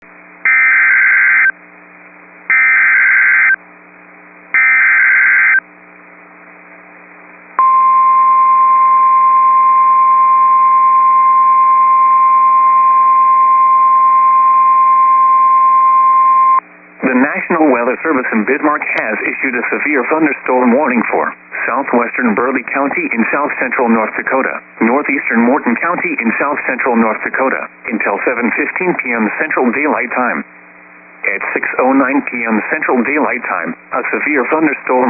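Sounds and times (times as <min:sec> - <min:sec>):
faint hum and hiss: 0:00.0 - 0:35.0
single-pitch warning alarm tone: 0:00.5 - 0:01.5, 0:02.5 - 0:03.6, 0:04.6 - 0:05.6, 0:07.6 - 0:16.6.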